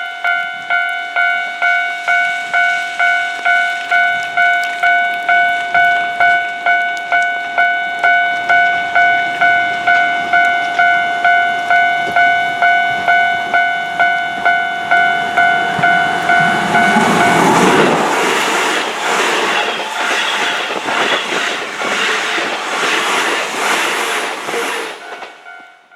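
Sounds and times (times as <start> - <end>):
level crossing warning bell: 0.0 - 25.9
train rumble: 11.5 - 25.9
train wheels clattering over rail joints: 15.8 - 25.5.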